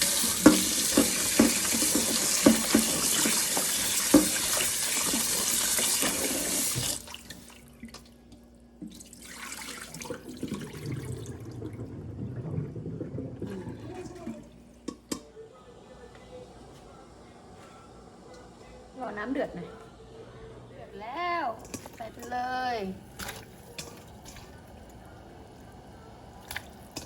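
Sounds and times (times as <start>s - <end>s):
tap running into a sink: 0.0s - 7.1s.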